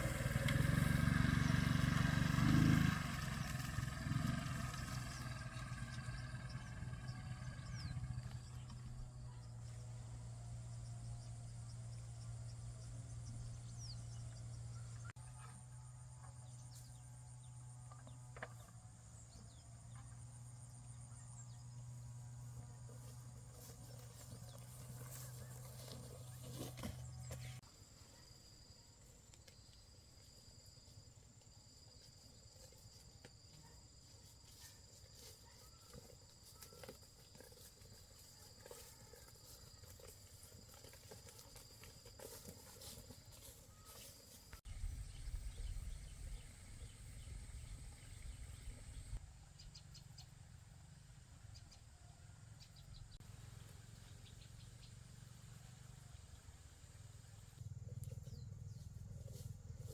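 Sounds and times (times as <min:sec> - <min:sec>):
insects trilling: 0:27.6 - 0:49.2.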